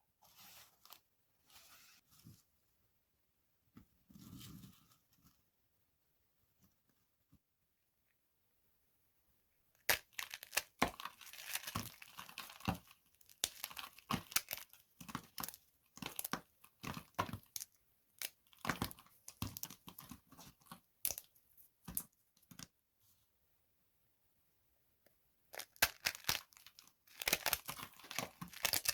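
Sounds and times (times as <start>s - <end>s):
dry soap crunching: 9.8s - 22.7s, 25.5s - 28.9s.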